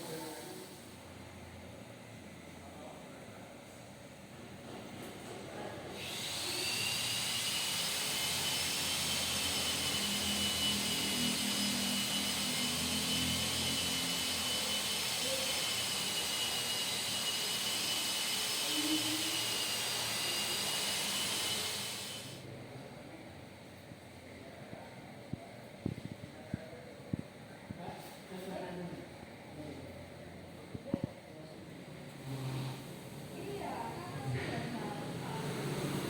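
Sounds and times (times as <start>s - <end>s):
high-speed power tool whine: 6.0s - 22.4s.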